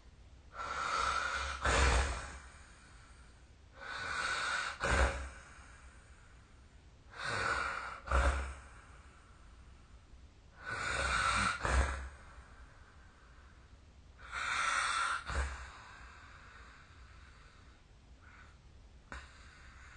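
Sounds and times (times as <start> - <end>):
person snoring: 0.6 - 2.9, 3.8 - 5.8, 7.1 - 8.9, 10.6 - 12.4, 14.2 - 16.1.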